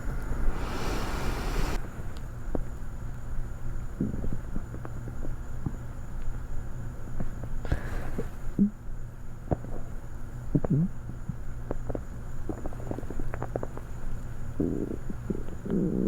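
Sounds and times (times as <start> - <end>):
stomach growling: 3.9 - 4.9, 9.5 - 16.0
stomach clicks and pops: 4.0 - 6.4, 9.5 - 16.0.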